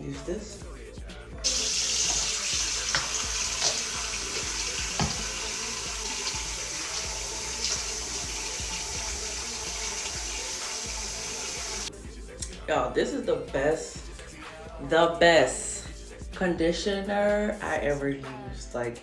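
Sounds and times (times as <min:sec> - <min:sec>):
water running from a tap: 0:01.4 - 0:11.9.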